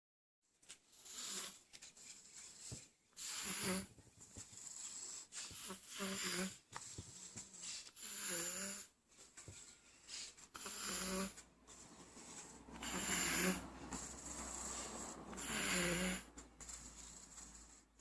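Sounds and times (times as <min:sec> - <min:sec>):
baby snoring loudly: 0:01.0 - 0:01.6, 0:03.2 - 0:03.9, 0:05.3 - 0:09.0, 0:10.6 - 0:17.9.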